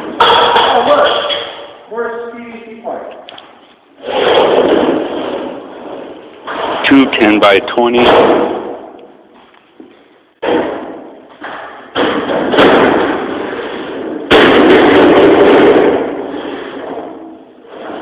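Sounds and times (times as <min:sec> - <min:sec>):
objects clattering: 0:03.4 - 0:07.3, 0:08.0 - 0:18.0
objects thumping and knocking: 0:04.0 - 0:18.0.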